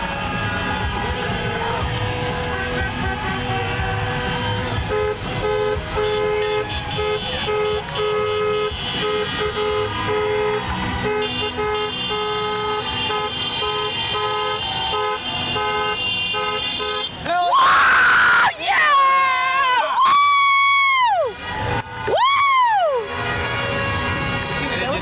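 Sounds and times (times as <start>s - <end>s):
car horns honking: 0.0s - 17.5s, 22.8s - 25.0s
street traffic rumble: 0.0s - 25.0s.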